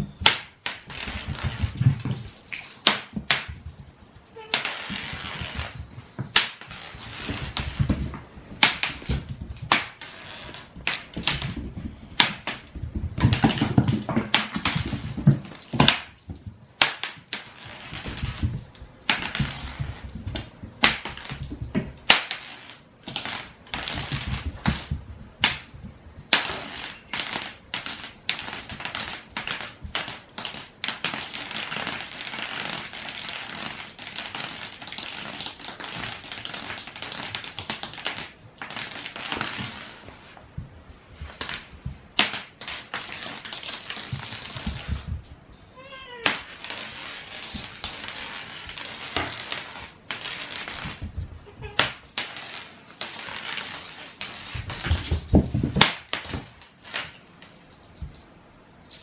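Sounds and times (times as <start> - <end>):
rustling: 0.0 - 59.0.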